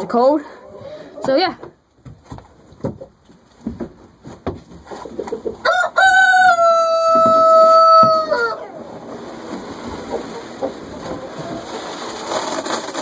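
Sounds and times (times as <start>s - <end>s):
scuffling knocks: 1.2s - 5.6s
chickens clucking: 4.8s - 13.0s
rooster crowing: 5.6s - 8.8s.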